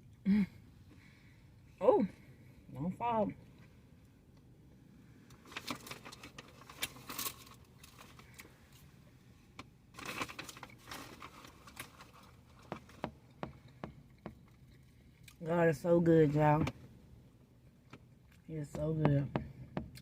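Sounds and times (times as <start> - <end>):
paper wrapper crinkling: 5.4 - 8.4, 10.0 - 13.0.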